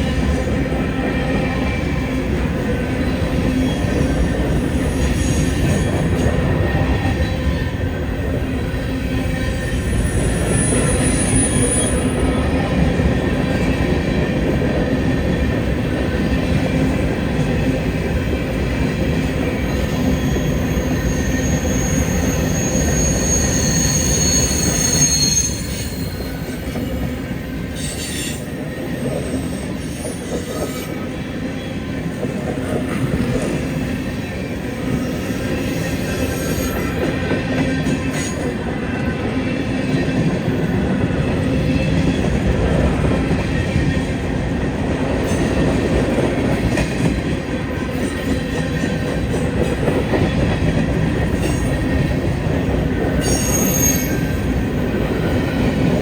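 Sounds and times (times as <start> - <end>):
train cars rumbling on rails: 0.0 - 56.0
high wheel squeal: 4.6 - 6.1, 9.7 - 12.4, 20.1 - 27.0, 35.0 - 37.0, 53.2 - 54.5.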